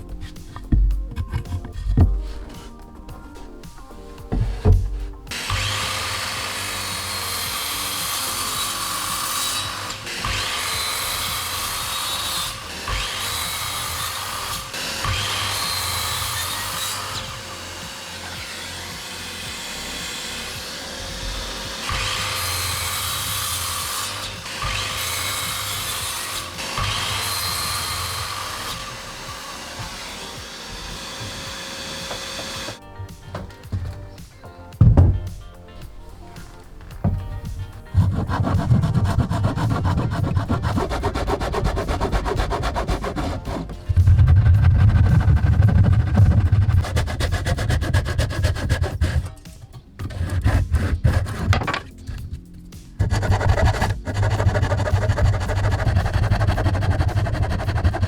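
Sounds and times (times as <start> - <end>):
power tool working wood: 0.0 - 52.4, 53.0 - 58.0.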